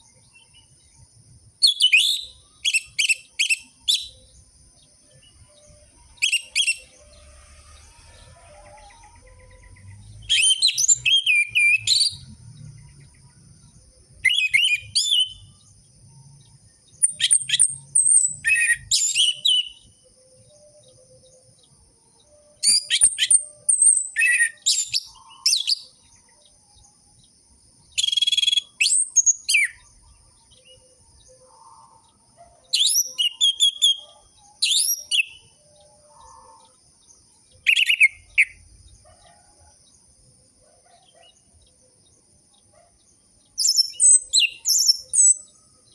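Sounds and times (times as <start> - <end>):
thrush singing whistles: 0.0 - 27.1, 27.8 - 36.6, 37.5 - 39.0, 43.5 - 45.9.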